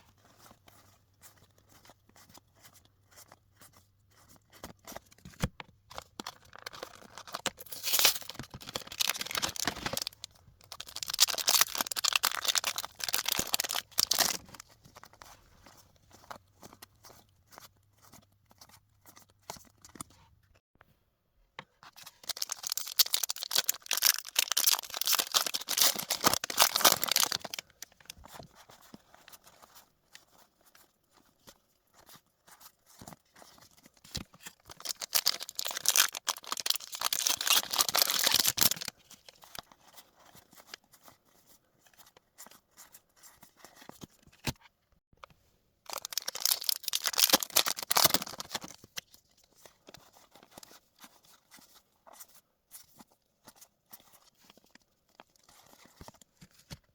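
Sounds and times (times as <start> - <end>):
foil wrappers crackling and tearing: 6.4 - 14.6, 22.1 - 28.1, 34.7 - 38.9, 45.9 - 48.8.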